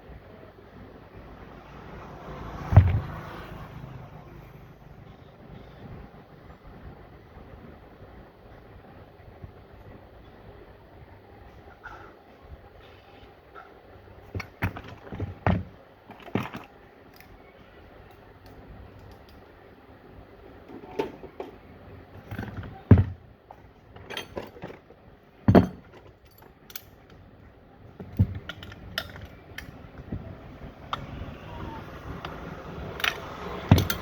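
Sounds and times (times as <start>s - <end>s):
tools knocking on metal parts: 23.9s - 27.2s, 28.0s - 30.3s, 32.2s - 34.0s.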